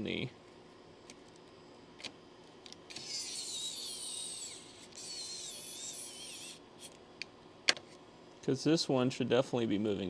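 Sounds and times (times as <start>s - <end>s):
electric screwdriver motor whining: 2.9s - 6.6s.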